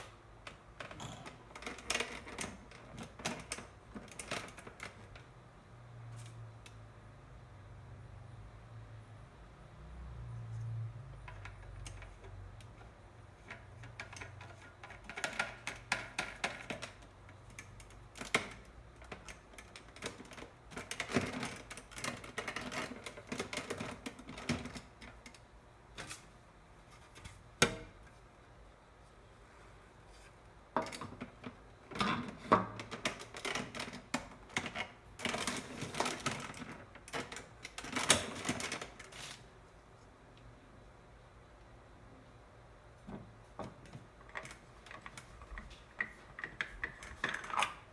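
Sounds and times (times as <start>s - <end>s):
plastic parts clicking and rattling: 13.4s - 25.4s, 30.8s - 39.4s, 43.9s - 47.9s.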